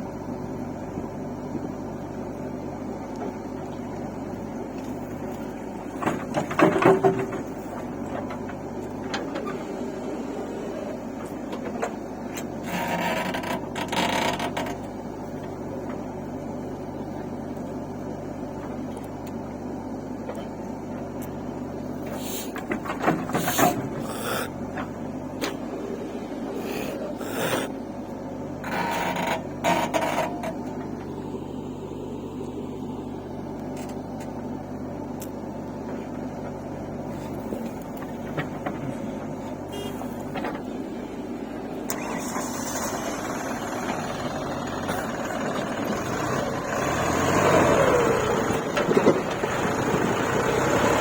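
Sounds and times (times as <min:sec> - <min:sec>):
diesel engine running: 0:00.0 - 0:51.0
metal clanking and scraping: 0:22.1 - 0:24.9.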